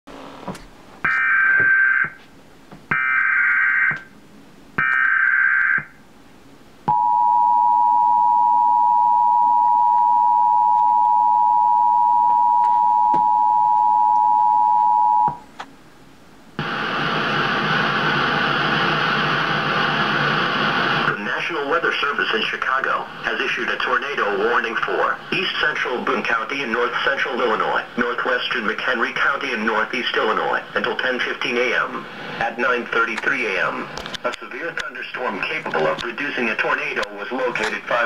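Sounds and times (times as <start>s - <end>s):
broadcast static hiss: 0.1s - 38.0s
two-tone attention signal: 6.9s - 15.4s.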